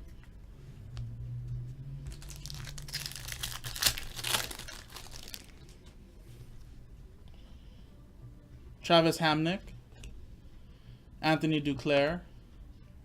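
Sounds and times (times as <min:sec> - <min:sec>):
foil wrapper crinkling and tearing: 0:02.1 - 0:05.8.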